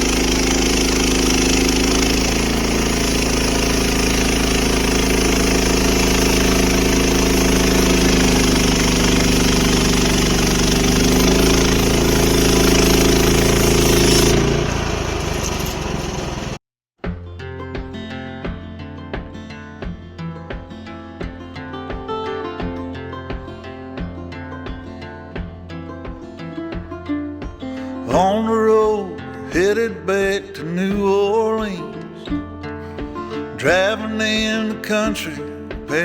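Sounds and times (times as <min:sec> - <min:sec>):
band sawmill cutting log: 0:00.0 - 0:16.6
small gasoline engine running: 0:00.0 - 0:16.6.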